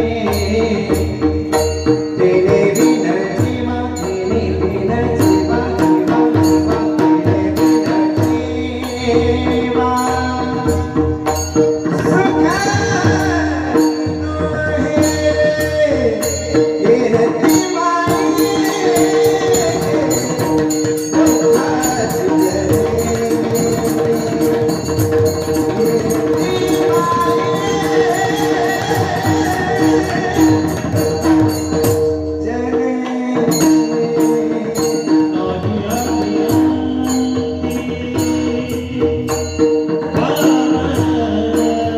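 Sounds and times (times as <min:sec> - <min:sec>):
barrel drum drumming: 0:00.0 - 0:32.4.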